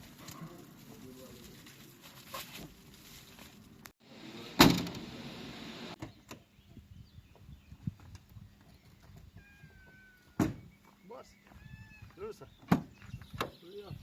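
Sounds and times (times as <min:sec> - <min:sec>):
loud thump with rattling: 0:04.6 - 0:05.1.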